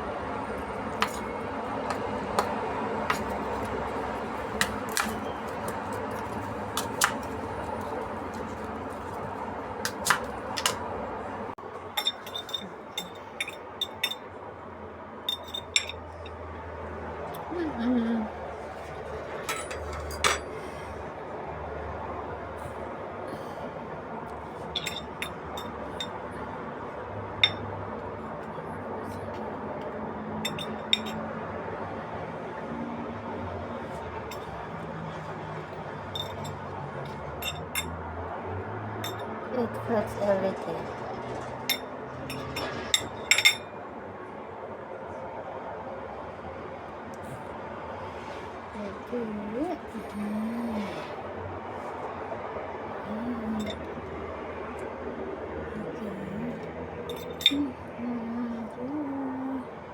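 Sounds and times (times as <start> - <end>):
steady whirring hum: 0.0 - 59.9
utensils clinking against cookware: 1.0 - 9.0, 11.8 - 14.3, 15.3 - 16.4, 19.4 - 20.6, 24.7 - 26.2, 30.4 - 31.2, 36.1 - 38.0, 39.0 - 39.4, 40.4 - 43.7, 53.4 - 53.9, 57.1 - 57.7.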